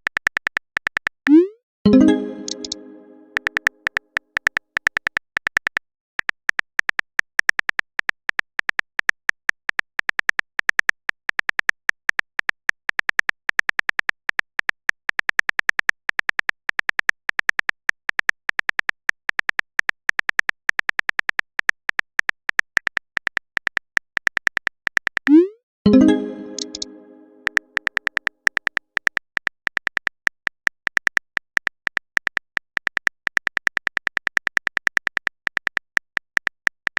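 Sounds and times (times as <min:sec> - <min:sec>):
phone keyboard typing clicks: 0:00.4 - 0:06.8, 0:26.0 - 0:28.8.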